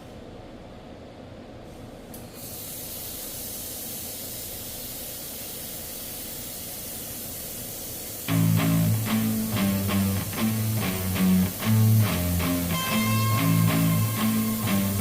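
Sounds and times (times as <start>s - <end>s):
laser welder hiss: 2.3s - 15.0s
low machine hum: 8.3s - 15.0s.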